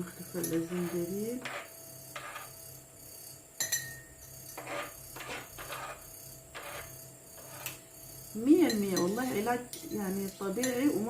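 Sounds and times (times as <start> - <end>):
utensils scraping: 0.1 - 2.6, 4.5 - 11.0.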